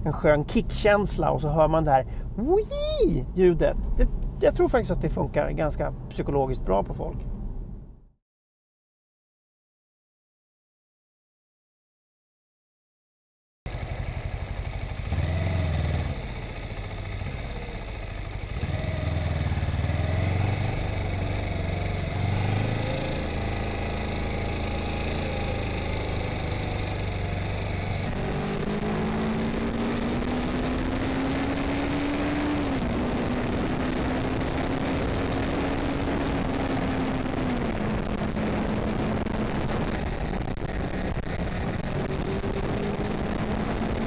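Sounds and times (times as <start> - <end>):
motor vehicle engine accelerating: 13.7 - 44.0.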